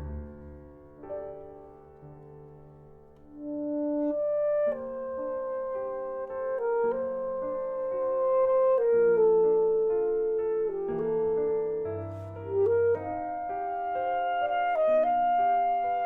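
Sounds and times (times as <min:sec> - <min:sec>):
piano accompaniment: 0:00.0 - 0:16.0
alto saxophone melody: 0:03.3 - 0:16.0.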